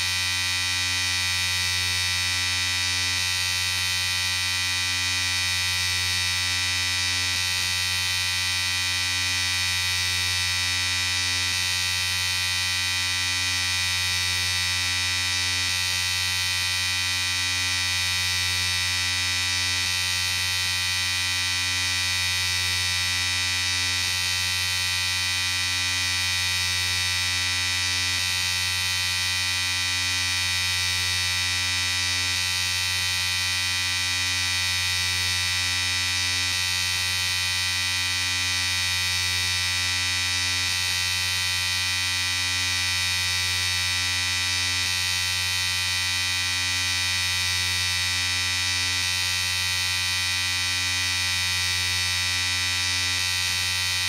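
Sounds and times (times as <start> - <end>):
electric shaver buzzing: 0.0 - 54.0.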